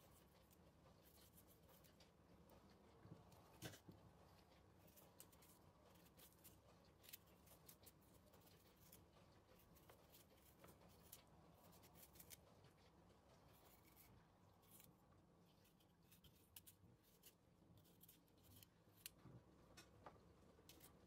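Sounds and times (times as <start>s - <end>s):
low room hum: 0.0s - 21.0s.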